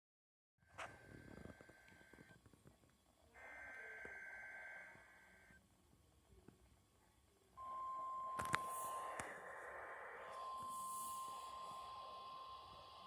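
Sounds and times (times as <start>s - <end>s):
steady warning alarm tone: 3.4s - 5.6s, 7.6s - 13.0s
two-tone data bursts: 3.4s - 5.6s, 7.6s - 13.0s.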